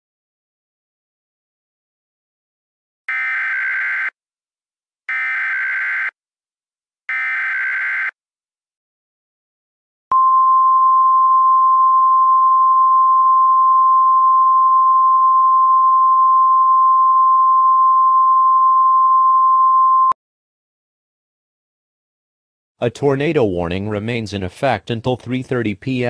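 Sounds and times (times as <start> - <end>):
warning alarm tone: 3.1 - 4.2, 5.1 - 6.2, 7.1 - 8.2.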